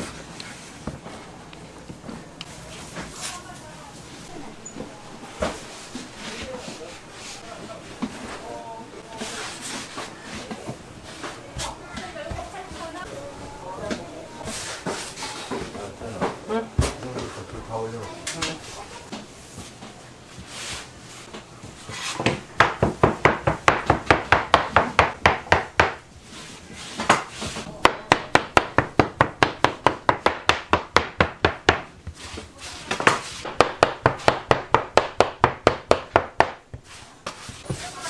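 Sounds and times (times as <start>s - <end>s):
blade chopping dough on wooden board: 22.0s - 26.0s, 27.0s - 32.2s, 32.9s - 37.5s.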